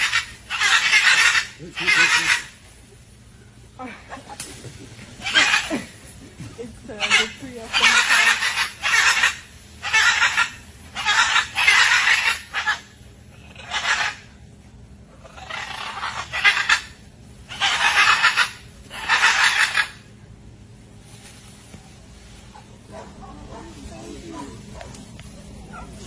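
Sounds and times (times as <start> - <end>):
animal screeches: 0.0 - 2.6, 5.2 - 5.9, 7.0 - 14.3, 15.2 - 20.0.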